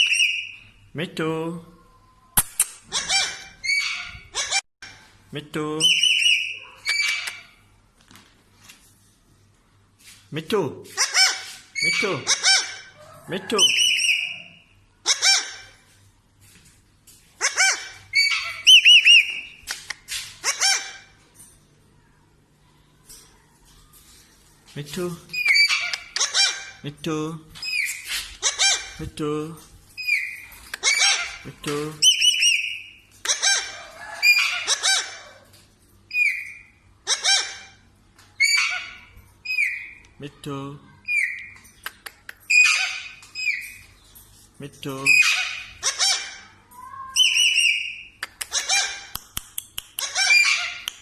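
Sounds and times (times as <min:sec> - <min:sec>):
parrot whistled calls: 0:00.0 - 0:00.7, 0:05.9 - 0:07.4, 0:13.6 - 0:15.6, 0:17.5 - 0:19.6, 0:32.0 - 0:33.6, 0:38.4 - 0:40.0, 0:47.1 - 0:49.0
parrot whistling and squawking: 0:00.0 - 0:00.7, 0:02.8 - 0:04.6, 0:05.8 - 0:07.6, 0:11.0 - 0:13.0, 0:13.6 - 0:15.8, 0:17.4 - 0:19.6, 0:20.4 - 0:21.1, 0:25.3 - 0:26.8, 0:27.6 - 0:29.0, 0:30.0 - 0:31.4, 0:32.0 - 0:35.2, 0:36.1 - 0:37.8, 0:38.4 - 0:40.0, 0:42.5 - 0:43.8, 0:45.1 - 0:49.1, 0:50.0 - 0:50.9
parrot screeching: 0:02.8 - 0:04.6, 0:05.9 - 0:07.6, 0:11.0 - 0:13.0, 0:13.6 - 0:15.8, 0:17.4 - 0:19.5, 0:20.4 - 0:21.1, 0:25.3 - 0:26.8, 0:27.6 - 0:29.0, 0:30.0 - 0:35.4, 0:36.1 - 0:37.8, 0:38.4 - 0:40.0, 0:42.5 - 0:43.8, 0:45.1 - 0:49.1, 0:50.0 - 0:50.9.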